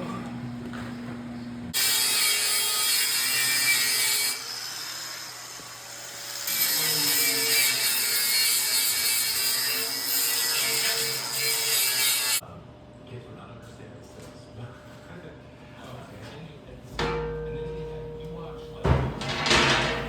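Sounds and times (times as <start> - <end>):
power tool grinding steel: 1.8 - 12.4.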